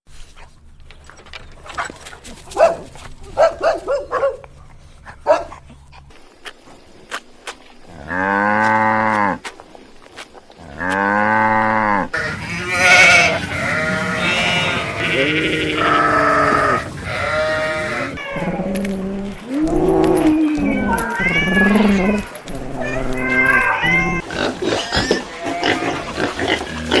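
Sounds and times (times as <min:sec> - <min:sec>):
cow mooing: 0:07.9 - 0:09.4, 0:10.6 - 0:27.0.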